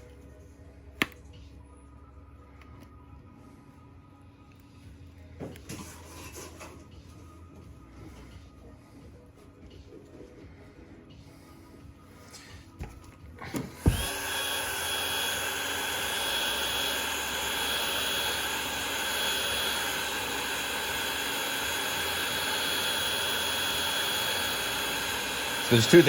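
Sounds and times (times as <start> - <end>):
heat gun fan whine: 12.2 - 26.0.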